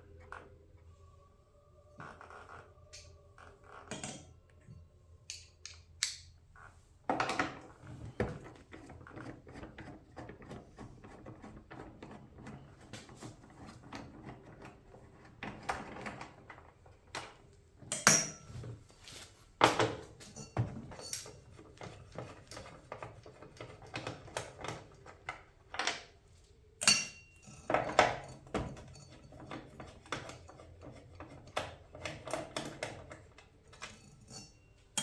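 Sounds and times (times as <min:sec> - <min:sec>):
metal tools clinking and knocking: 0:17.9 - 0:18.7, 0:26.8 - 0:31.4.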